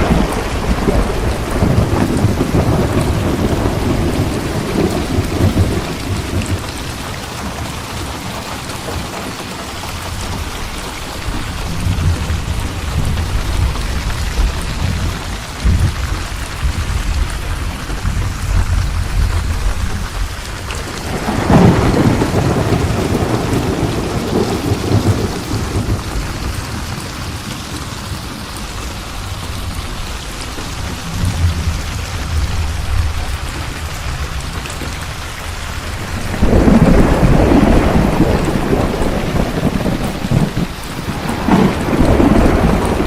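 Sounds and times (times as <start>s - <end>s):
steady rain: 0.0s - 43.0s
thunder rumbling: 0.0s - 43.0s.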